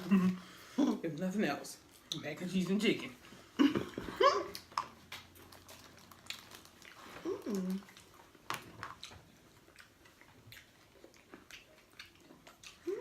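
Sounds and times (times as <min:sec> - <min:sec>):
person humming: 0:00.0 - 0:01.0, 0:07.2 - 0:07.9
chewing and mouth clicks: 0:01.8 - 0:02.3, 0:04.4 - 0:13.0.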